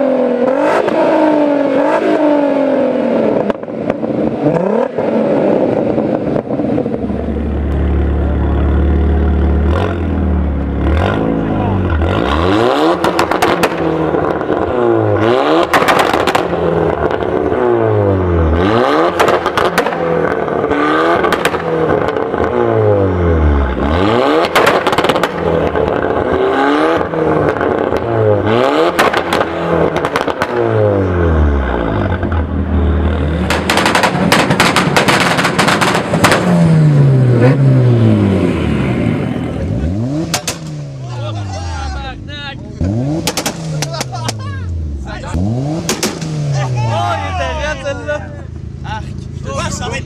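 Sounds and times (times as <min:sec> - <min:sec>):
car engine revving: 0:00.0 - 0:50.0
exhaust pops and bangs: 0:12.9 - 0:14.7, 0:15.6 - 0:17.3, 0:19.1 - 0:22.6, 0:24.4 - 0:26.4, 0:28.9 - 0:30.8, 0:33.4 - 0:36.9, 0:40.2 - 0:40.8, 0:43.2 - 0:44.5, 0:45.8 - 0:46.6.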